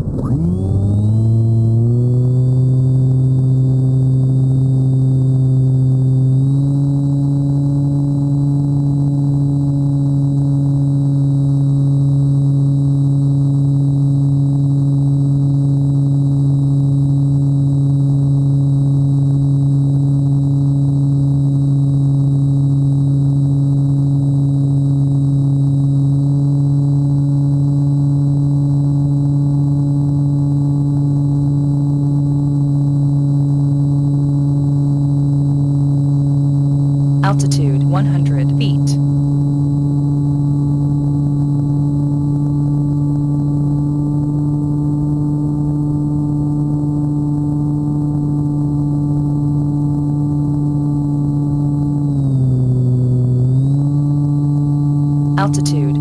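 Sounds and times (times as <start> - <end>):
model plane motor droning: 0.0 - 19.6, 40.0 - 55.2.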